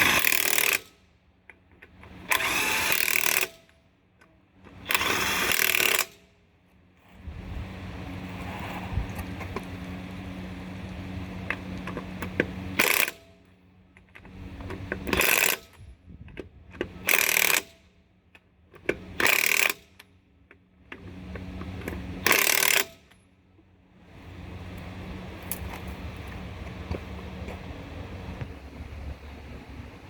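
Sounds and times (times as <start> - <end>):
power tool bursts: 0.0 - 1.0, 2.2 - 3.7, 4.8 - 6.2, 17.0 - 17.8, 19.1 - 19.9, 22.2 - 23.1
steady low hum: 6.2 - 17.1, 23.3 - 30.0.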